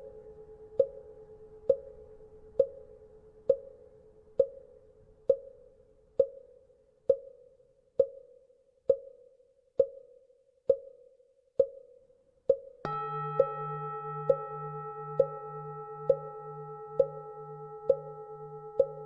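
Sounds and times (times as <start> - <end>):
temple bell ringing: 12.9 - 19.0.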